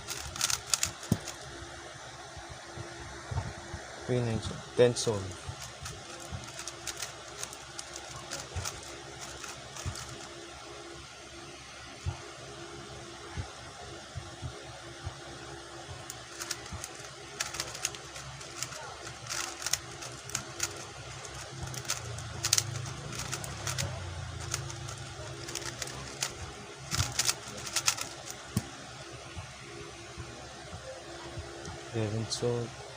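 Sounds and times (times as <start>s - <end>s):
puzzle cube turning clicks: 0.0s - 1.4s, 5.5s - 10.3s, 16.1s - 28.7s.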